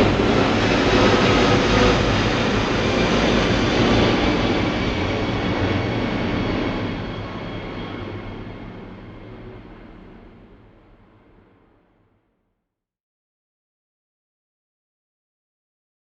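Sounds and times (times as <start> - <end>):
jet airliner passing overhead: 0.0 - 11.7.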